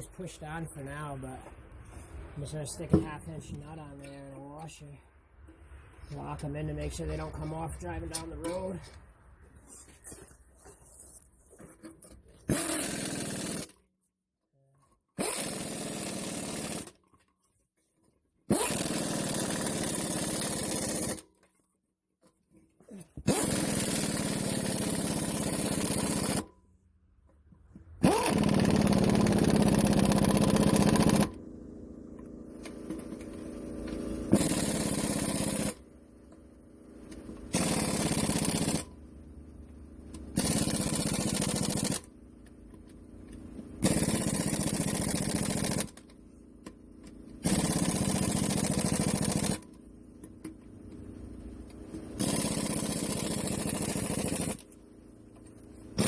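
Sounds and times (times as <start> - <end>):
power tool motor bursts: 12.5 - 13.8, 15.2 - 17.0, 18.5 - 21.3, 23.2 - 26.5, 28.0 - 31.4, 32.6 - 35.8, 37.4 - 39.0, 40.3 - 42.1, 43.8 - 46.0, 47.4 - 49.7, 52.2 - 54.7.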